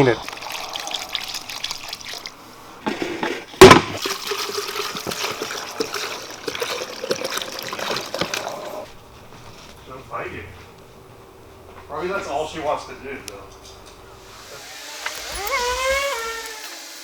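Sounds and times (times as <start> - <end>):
liquid splashing and trickling: 0.0 - 2.7, 4.0 - 8.9.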